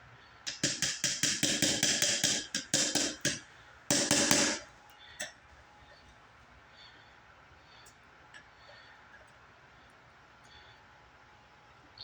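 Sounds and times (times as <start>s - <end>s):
hammer blows on metal: 0.5s - 4.7s.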